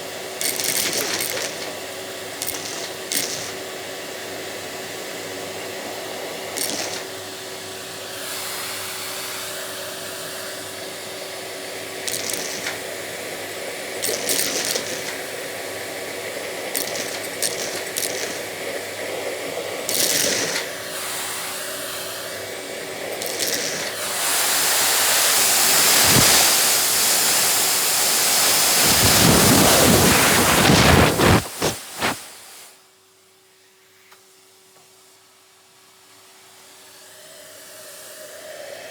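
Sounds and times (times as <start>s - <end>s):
vacuum cleaner running: 0.0s - 32.8s, 36.0s - 38.9s
seeds rattling up vacuum nozzle: 0.4s - 1.7s, 2.4s - 3.6s, 6.5s - 7.1s, 12.0s - 12.9s, 14.0s - 15.3s, 16.7s - 18.5s, 19.8s - 20.7s, 23.1s - 32.2s.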